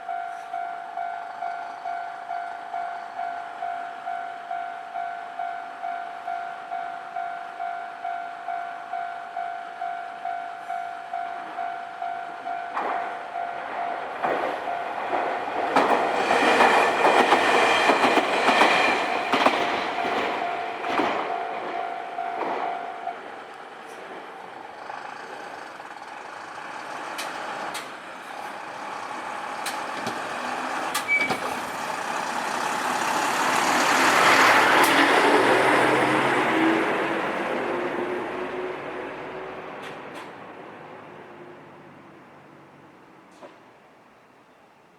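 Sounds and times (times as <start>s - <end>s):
level crossing warning bell: 0.0s - 15.6s, 16.3s - 24.7s
train wheels clacking over rail joints: 14.1s - 23.0s, 24.8s - 37.7s
vehicle passing rush: 31.6s - 39.8s.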